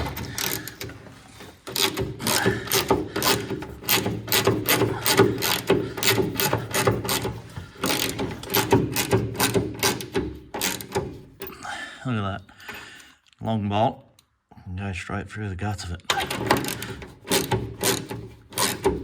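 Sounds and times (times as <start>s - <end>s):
socket ratchet clicking: 1.7s - 11.5s, 16.2s - 19.0s.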